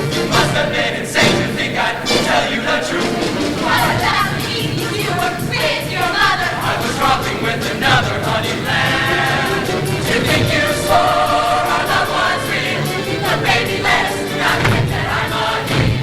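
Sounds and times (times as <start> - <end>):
choir singing in harmony: 0.0 - 16.0.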